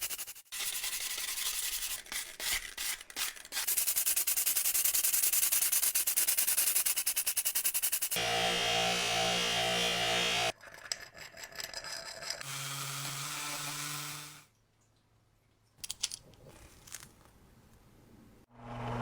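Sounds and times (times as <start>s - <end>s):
electric power tool running: 8.2s - 10.5s, 18.5s - 19.0s.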